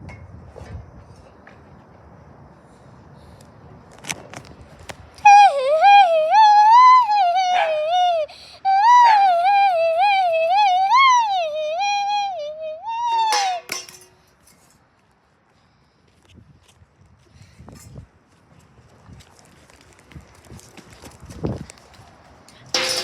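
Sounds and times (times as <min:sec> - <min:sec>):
high wavering voice wail: 0:05.3 - 0:13.8.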